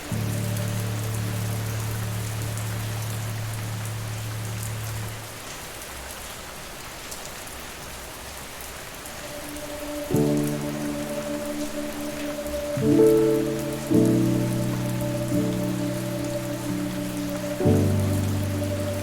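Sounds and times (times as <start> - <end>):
soft musical chord: 0.0 - 4.0, 9.2 - 19.0
steady rain: 0.0 - 19.0
raindrops ticking: 9.1 - 19.0
low held musical tone: 9.2 - 19.0.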